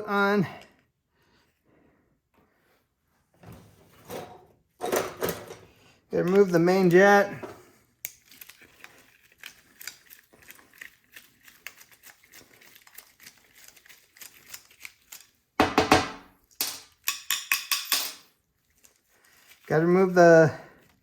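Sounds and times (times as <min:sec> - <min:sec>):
screwdriver on metal parts tapping: 0:15.6 - 0:18.3.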